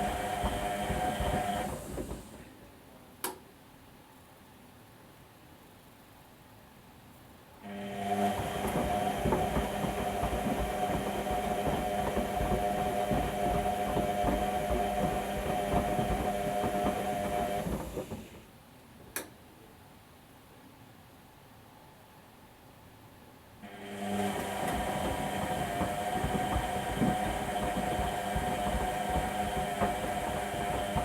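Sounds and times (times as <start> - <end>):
washing machine motor whine: 0.0 - 2.5, 7.6 - 18.5, 23.6 - 31.0
tumbling load knocking: 8.6 - 18.3, 24.6 - 31.0.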